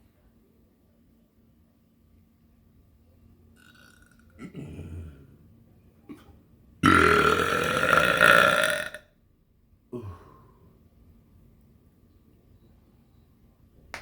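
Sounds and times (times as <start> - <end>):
person burping loudly: 3.6 - 5.3, 6.8 - 9.0.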